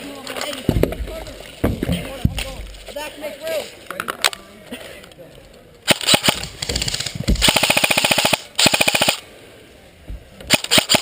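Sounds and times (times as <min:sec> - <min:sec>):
airsoft rifle firing bursts: 0:05.9 - 0:09.2, 0:10.5 - 0:11.0.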